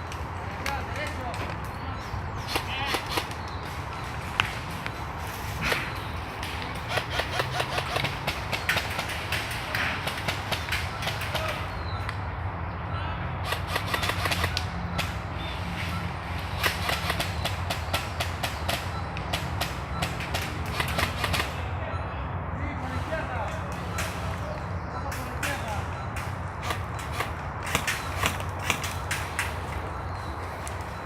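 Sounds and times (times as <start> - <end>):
airsoft guns firing: 2.4 - 3.4, 5.6 - 11.6, 13.4 - 15.2, 16.6 - 21.6, 26.6 - 29.6.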